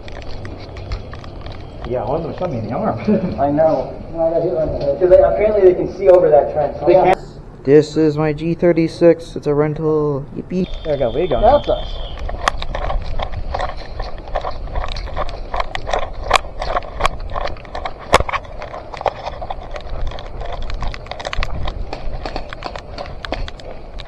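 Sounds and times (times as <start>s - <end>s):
gear knocking and clicking: 0.0s - 3.4s, 10.7s - 24.0s
footsteps walking: 0.0s - 7.2s, 10.5s - 24.0s
low rumble of movement: 0.0s - 7.2s, 10.2s - 24.0s.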